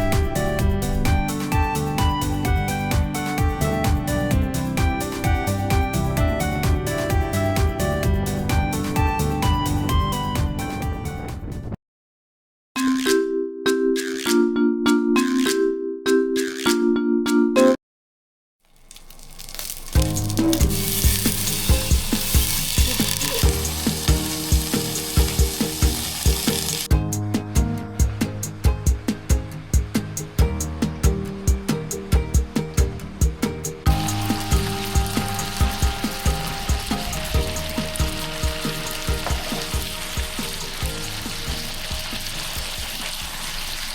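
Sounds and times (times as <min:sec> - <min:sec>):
background music with steady beat: 0:00.0 - 0:11.8, 0:20.0 - 0:43.6
steady hiss: 0:18.7 - 0:26.9, 0:31.7 - 0:43.9
steak sizzling in a pan: 0:18.7 - 0:26.9, 0:34.0 - 0:43.9.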